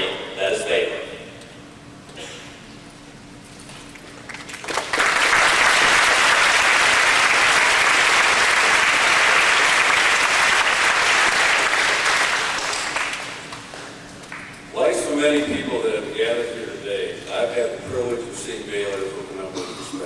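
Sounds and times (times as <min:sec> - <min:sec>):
audience applauding: 0:04.2 - 0:14.5.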